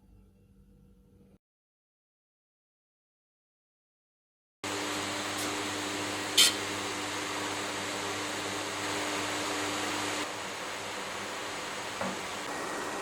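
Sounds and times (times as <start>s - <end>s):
machine hum and hiss: 4.6s - 13.0s.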